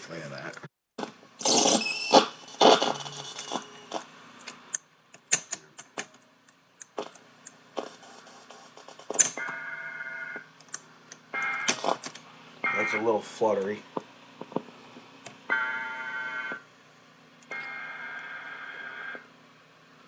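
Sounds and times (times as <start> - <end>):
tape mechanism rewinding: 1.4 - 3.8
steady electronic alert tones: 12.6 - 13.1.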